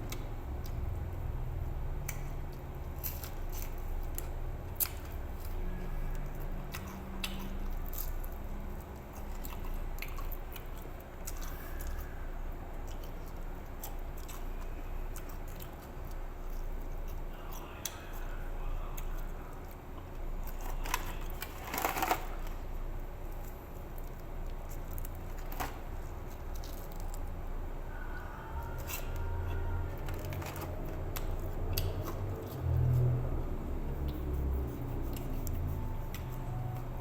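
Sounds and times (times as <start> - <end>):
steady low hum: 0.0 - 37.0
person chewing and biting food: 30.0 - 36.9.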